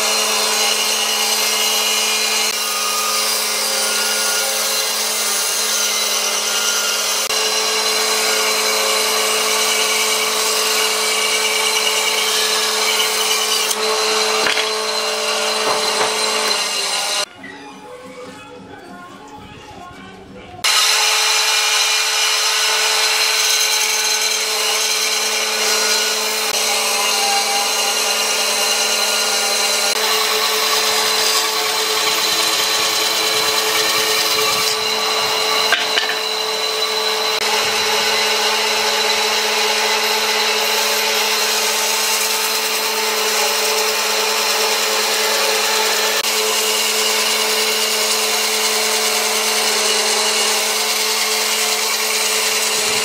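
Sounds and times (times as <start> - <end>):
wood being cut rasping: 0.0 - 17.3, 20.6 - 53.0
power tool motor hum: 7.2 - 17.3.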